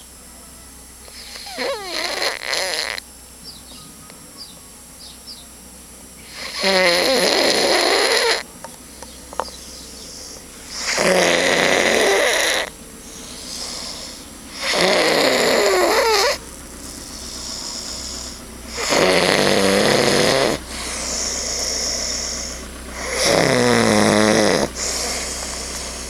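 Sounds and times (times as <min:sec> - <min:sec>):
man snoring: 0:01.1 - 0:03.0, 0:06.2 - 0:08.5, 0:10.1 - 0:26.0
quiet breathing: 0:01.1 - 0:03.0, 0:09.4 - 0:26.0.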